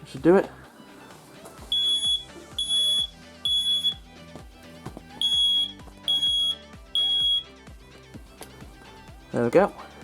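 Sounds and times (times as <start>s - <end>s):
smoke alarm beeping: 1.7s - 4.0s, 5.2s - 7.6s.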